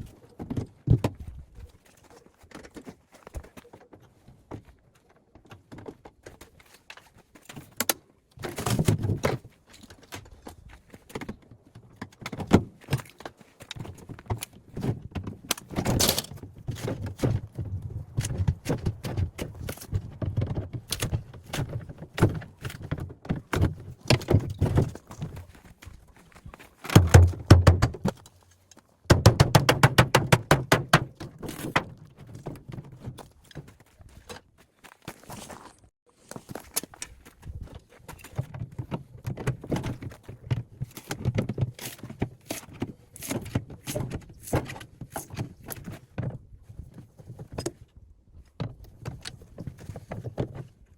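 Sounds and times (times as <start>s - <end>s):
hand tools knocking and rattling: 26.9s - 28.2s, 29.1s - 33.1s.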